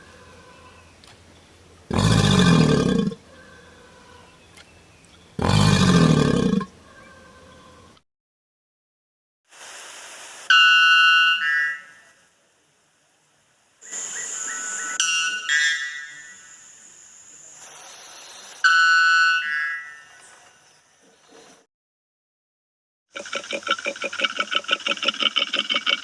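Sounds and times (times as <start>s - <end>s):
steady background hiss: 9.5s - 18.7s.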